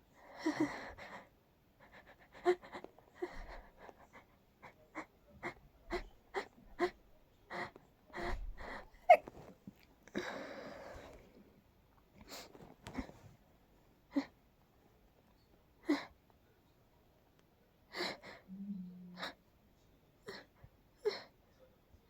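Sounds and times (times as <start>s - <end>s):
breathy breathing: 7.5s - 9.2s, 10.1s - 11.4s.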